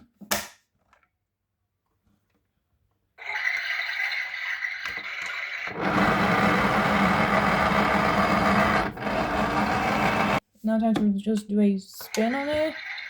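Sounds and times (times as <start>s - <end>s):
small electric motor whining: 4.8s - 10.4s.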